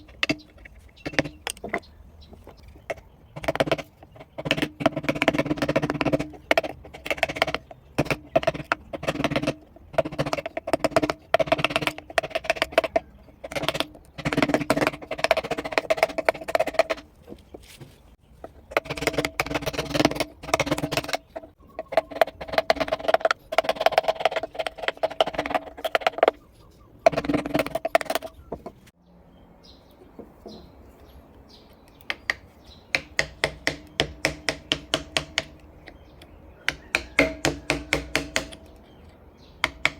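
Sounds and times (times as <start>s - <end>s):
chisel tapping into wood: 31.9s - 38.8s, 39.6s - 39.9s.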